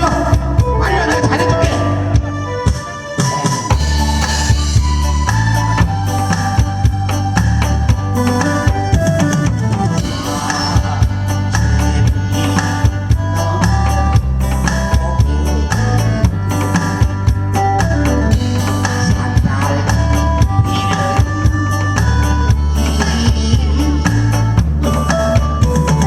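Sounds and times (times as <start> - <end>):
instrumental backing music: 0.0 - 26.0.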